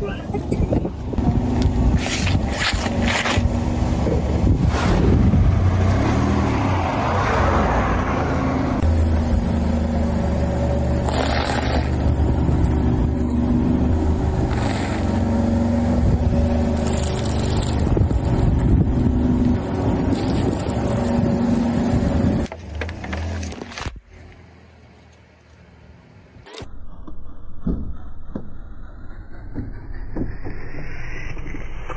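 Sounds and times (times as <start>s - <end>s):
car engine running: 8.0s - 24.0s.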